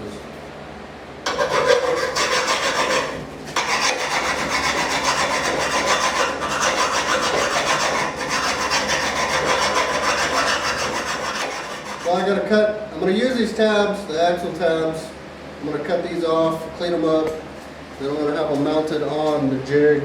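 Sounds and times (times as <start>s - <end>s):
hand file rasping on metal: 1.3s - 12.3s.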